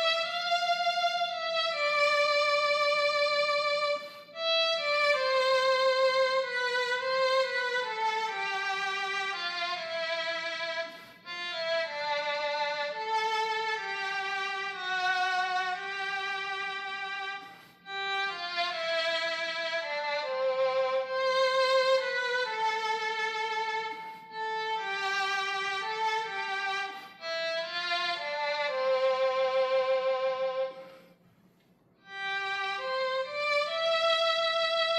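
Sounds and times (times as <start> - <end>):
player breathing: 10.8 - 11.4, 17.4 - 18.0.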